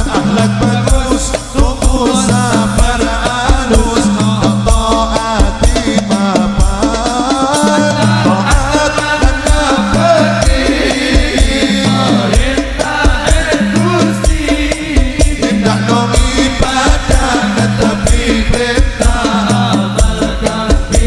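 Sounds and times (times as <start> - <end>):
dense percussion: 0.0 - 21.0
devotional music: 0.0 - 21.0
heavy boosted bass line: 9.5 - 21.0.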